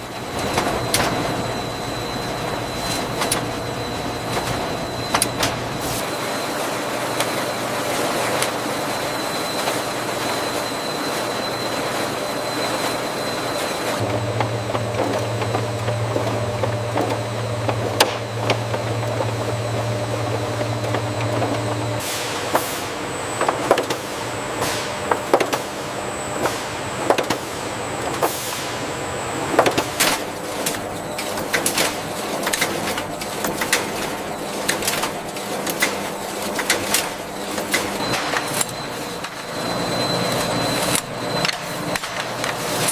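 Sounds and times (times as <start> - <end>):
machinery low mechanical hum: 0.0 - 42.9
sharp mechanical clicks and clanks: 29.5 - 39.6, 40.3 - 42.9.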